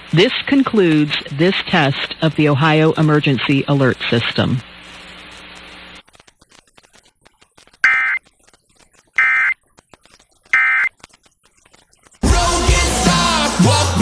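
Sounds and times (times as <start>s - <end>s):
digital data tone bursts: 7.8s - 8.2s, 9.2s - 9.6s, 10.5s - 11.0s
music: 12.2s - 14.0s.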